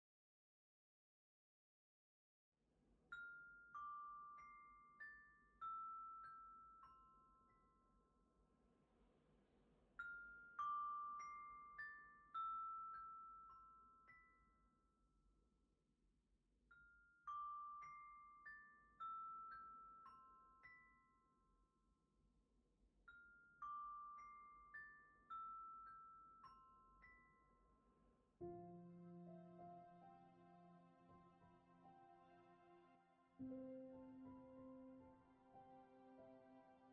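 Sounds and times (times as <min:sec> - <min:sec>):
soft music: 0:03.1 - 0:08.5, 0:10.0 - 0:15.4, 0:16.7 - 0:22.0, 0:23.0 - 0:36.9.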